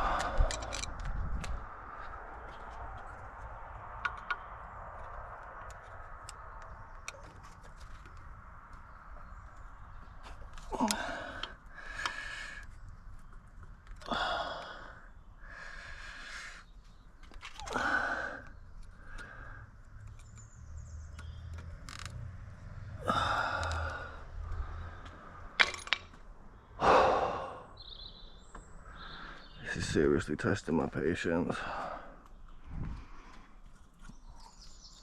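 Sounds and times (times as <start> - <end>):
man breathing out and sighing: 0.0 - 0.8, 10.7 - 12.7, 14.0 - 16.7, 17.6 - 19.7, 23.0 - 25.0, 26.8 - 27.8.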